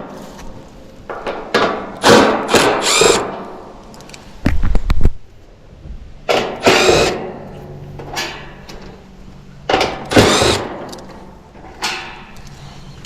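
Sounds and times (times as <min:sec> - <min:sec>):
cordless drill driving screws: 0:02.0 - 0:03.3, 0:06.6 - 0:07.2, 0:10.1 - 0:11.0.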